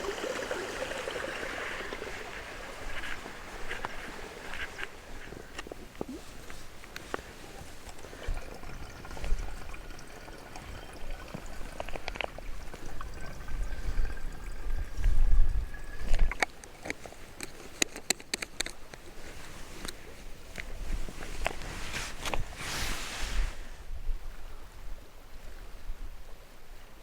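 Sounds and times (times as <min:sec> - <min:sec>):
liquid pouring into container: 0:00.0 - 0:03.6, 0:07.4 - 0:17.0.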